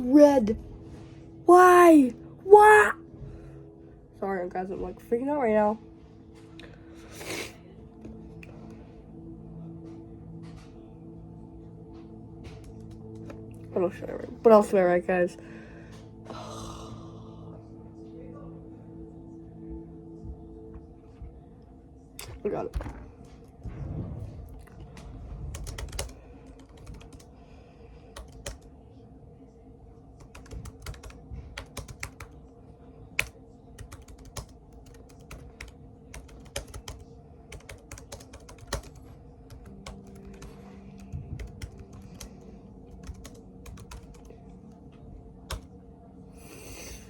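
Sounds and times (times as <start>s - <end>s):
laptop keyboard typing: 12.5s - 13.4s, 25.4s - 27.3s, 28.1s - 28.7s, 30.2s - 32.4s, 33.2s - 44.4s, 45.5s - 45.7s.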